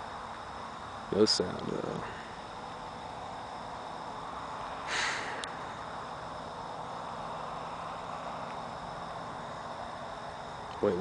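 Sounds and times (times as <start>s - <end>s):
crickets chirping: 0.0s - 11.0s
soft outdoor hiss: 0.0s - 11.0s
breathy rush: 4.8s - 5.9s.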